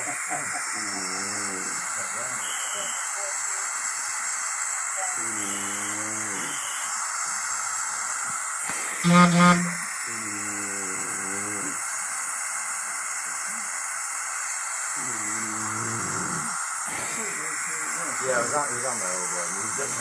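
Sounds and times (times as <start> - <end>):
microphone hiss: 0.0 - 20.0
person low drawn-out vocal sounds: 0.8 - 2.0, 9.0 - 11.8, 15.0 - 17.2
person high-pitched vocal sound: 9.0 - 11.8.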